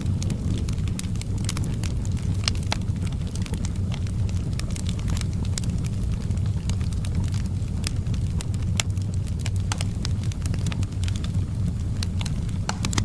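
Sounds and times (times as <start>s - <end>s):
fire pops and snaps: 0.0s - 13.0s
wood fire crackling: 0.0s - 13.0s.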